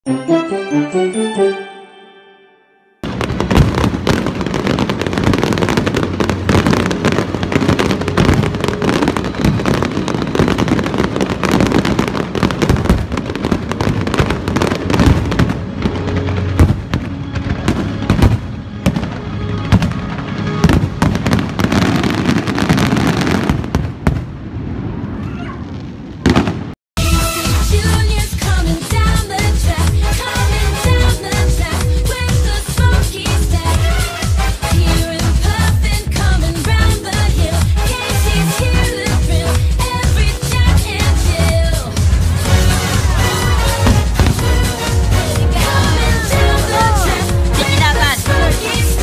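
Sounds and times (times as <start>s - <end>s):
music: 0.0s - 3.1s, 6.4s - 11.8s, 14.4s - 22.2s, 27.0s - 49.0s
chiming tune: 0.1s - 3.1s
fireworks bursting and crackling: 3.0s - 49.0s.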